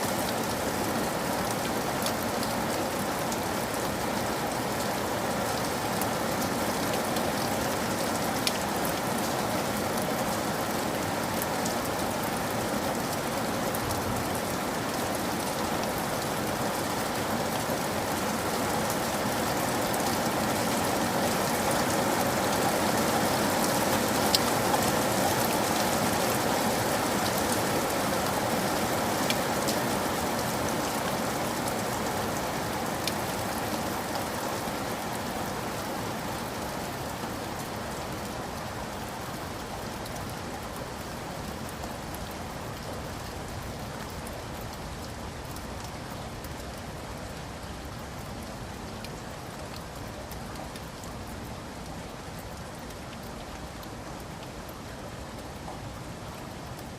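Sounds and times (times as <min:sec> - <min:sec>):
steady rain falling: 0:00.0 - 0:56.9.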